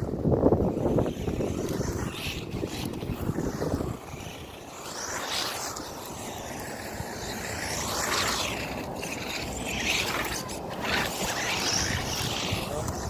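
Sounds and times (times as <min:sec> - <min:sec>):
tyre and wind noise: 0:00.0 - 0:13.0.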